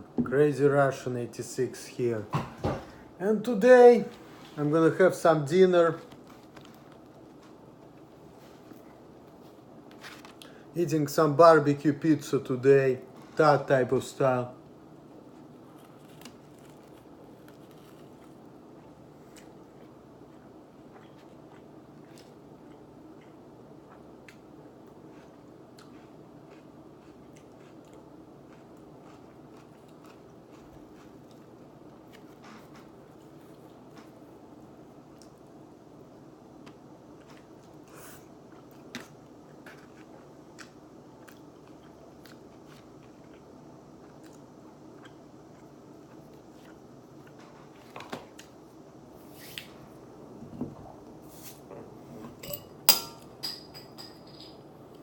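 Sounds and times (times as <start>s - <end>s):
steady low hum: 0.0s - 55.0s
person chewing food: 15.4s - 32.4s, 36.6s - 48.6s.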